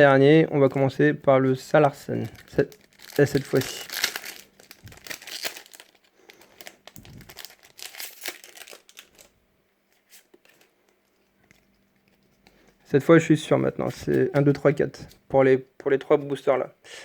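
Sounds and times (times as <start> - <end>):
foil wrapper crinkling and tearing: 2.2 - 9.3.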